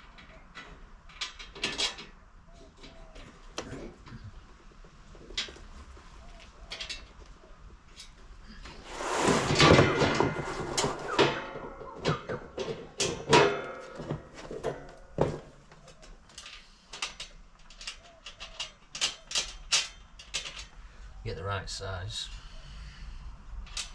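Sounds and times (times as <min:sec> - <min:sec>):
metal nuts and bolts clinking: 0:00.0 - 0:02.2, 0:15.8 - 0:20.8
parts clicking and knocking: 0:00.0 - 0:04.2, 0:09.7 - 0:20.8.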